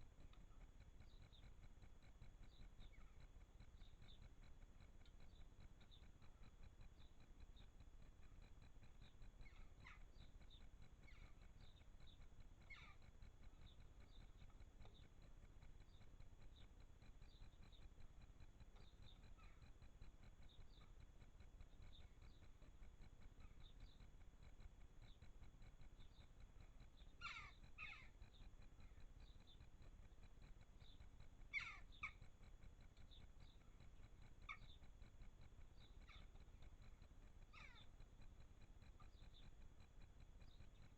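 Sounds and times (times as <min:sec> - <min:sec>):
faint bird calls: 0:00.0 - 0:40.9
harsh bird calls: 0:12.6 - 0:13.1, 0:27.1 - 0:28.4, 0:30.8 - 0:32.3, 0:37.4 - 0:38.0.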